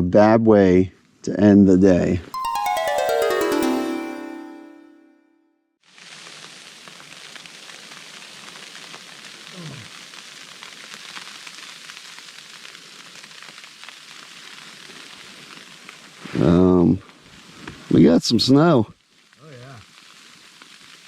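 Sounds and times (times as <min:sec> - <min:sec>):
short falling tone: 0:02.4 - 0:05.2.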